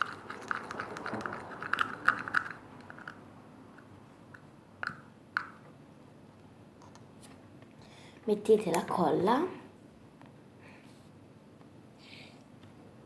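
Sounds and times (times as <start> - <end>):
stirrer clicking against bowl: 0.0 - 3.2.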